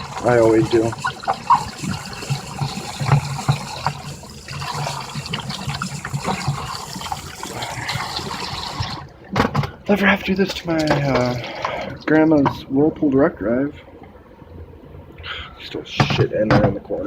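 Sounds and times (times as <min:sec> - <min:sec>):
water running and trickling: 0:00.0 - 0:09.2.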